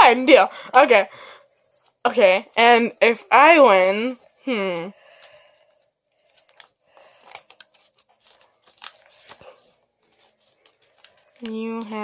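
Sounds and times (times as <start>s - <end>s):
paper rustling and crinkling: 3.7s - 12.0s.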